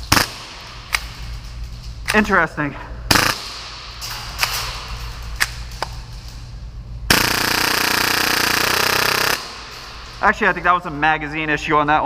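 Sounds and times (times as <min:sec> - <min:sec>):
rapid-fire airsoft pistol burst: 0:03.1 - 0:03.7, 0:07.1 - 0:09.7.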